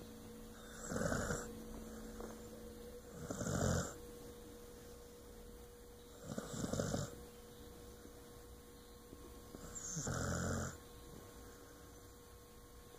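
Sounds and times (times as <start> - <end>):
dog snoring: 0.5 - 4.0, 6.1 - 7.2, 9.5 - 10.8.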